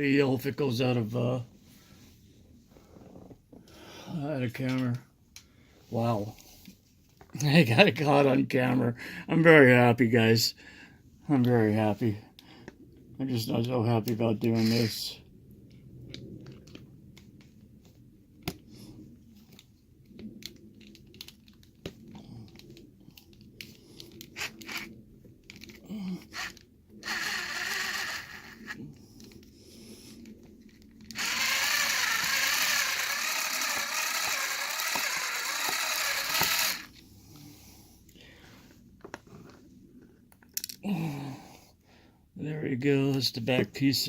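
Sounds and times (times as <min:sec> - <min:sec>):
power tool cutting metal: 0:26.3 - 0:28.8, 0:31.2 - 0:36.9.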